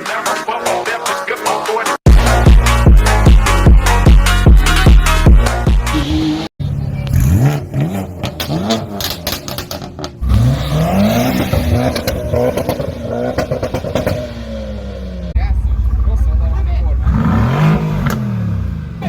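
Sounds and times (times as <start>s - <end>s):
engine revving: 5.5s - 19.0s.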